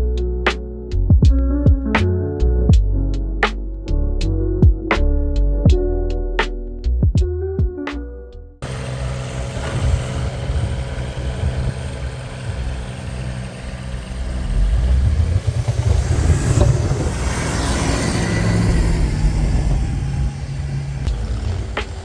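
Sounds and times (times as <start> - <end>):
tractor engine under load: 8.6 - 22.0.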